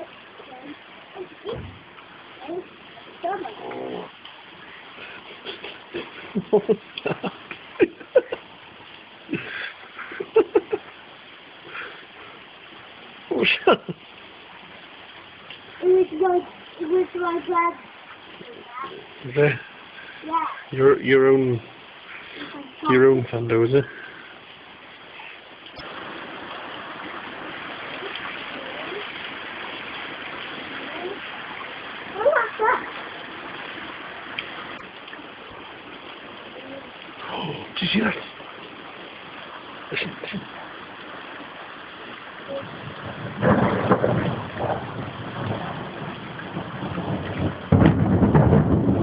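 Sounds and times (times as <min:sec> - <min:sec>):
heavy rain hissing: 0:00.0 - 0:49.0
thunder clap and rumble: 0:38.2 - 0:49.0.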